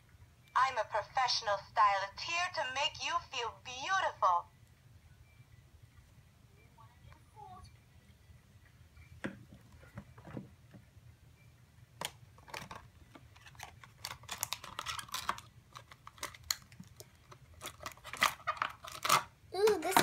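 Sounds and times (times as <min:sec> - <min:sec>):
plastic packaging rustling: 0:12.4 - 0:20.0.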